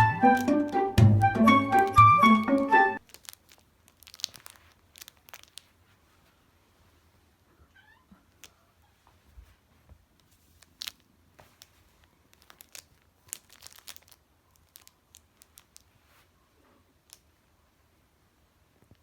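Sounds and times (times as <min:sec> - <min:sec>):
wrappers crinkling: 0:00.0 - 0:00.9, 0:01.7 - 0:06.4, 0:10.2 - 0:16.3.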